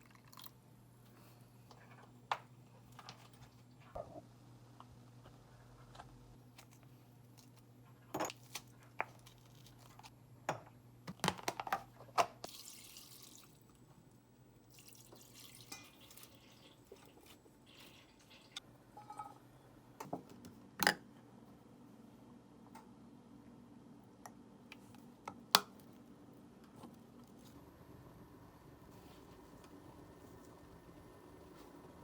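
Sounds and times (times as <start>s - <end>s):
tap water running: 12.5s - 13.6s.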